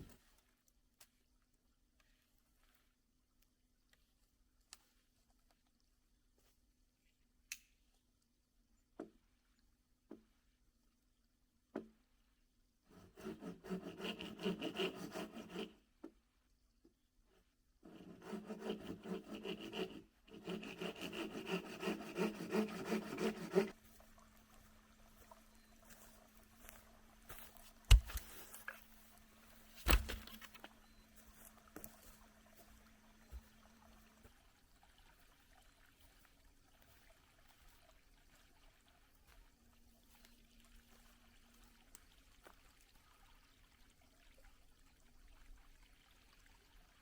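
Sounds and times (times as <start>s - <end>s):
hand saw cutting wood: 12.9s - 15.9s, 17.8s - 23.8s.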